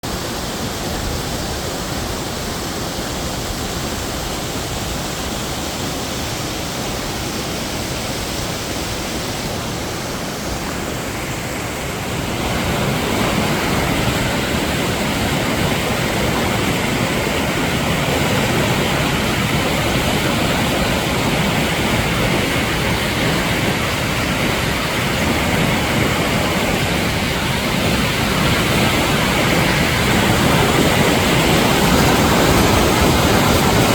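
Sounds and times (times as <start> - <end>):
stream rushing over rocks: 0.0 - 33.9.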